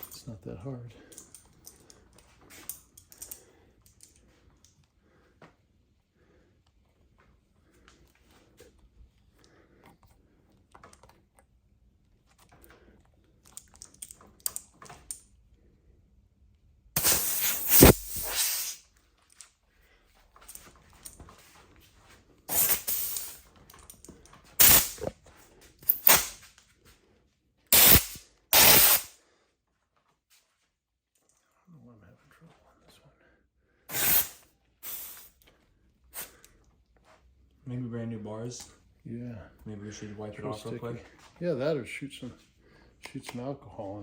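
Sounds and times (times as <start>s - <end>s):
faint clicks and handling: 1.1s - 5.0s, 6.6s - 15.4s, 20.2s - 26.7s
compressed air hissing: 17.0s - 18.8s, 22.5s - 23.5s, 24.6s - 25.1s, 25.9s - 26.4s, 27.7s - 29.2s, 33.9s - 35.4s, 36.2s - 36.4s.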